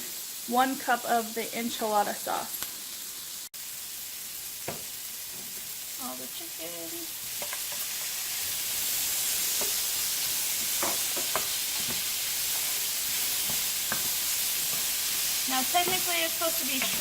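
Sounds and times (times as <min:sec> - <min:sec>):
food sizzling in frying pan: 0:00.0 - 0:17.0
utensil stirring clicks and scrapes: 0:10.6 - 0:16.1.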